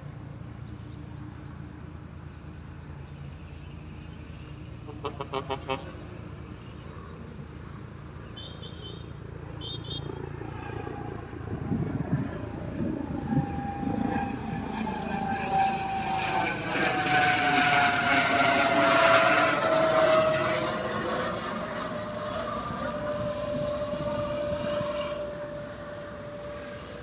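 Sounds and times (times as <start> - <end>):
propeller aircraft engine drone: 0.0 - 27.0.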